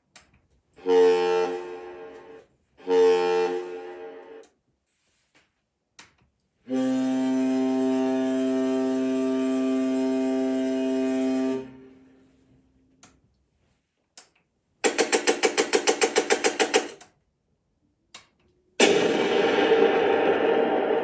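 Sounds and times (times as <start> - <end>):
horn-like tone from small speaker: 0.8 - 4.4, 6.7 - 12.3
loud noisy rumbling effect: 18.8 - 21.0.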